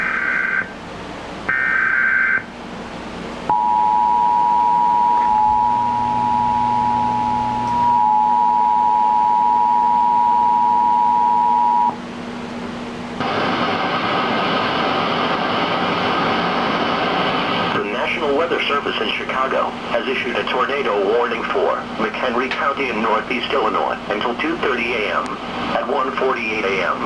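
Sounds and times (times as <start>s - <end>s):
buzzy digital header squawks: 0.0s - 0.8s, 1.5s - 2.5s
hissy broadcast audio: 0.0s - 27.0s
two-tone attention signal: 3.5s - 12.0s.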